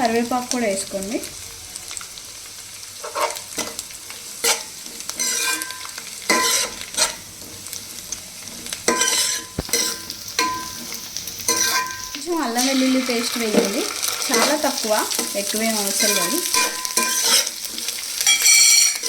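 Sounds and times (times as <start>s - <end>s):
vegetables sizzling in oil: 0.0s - 19.0s
spoon scraping metal pot: 5.2s - 7.2s, 8.9s - 19.0s.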